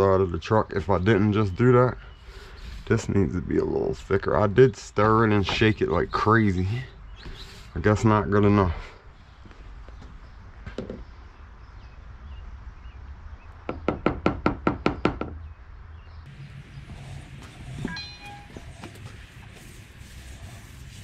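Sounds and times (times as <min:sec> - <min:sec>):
short squeak: 0:17.8 - 0:18.7.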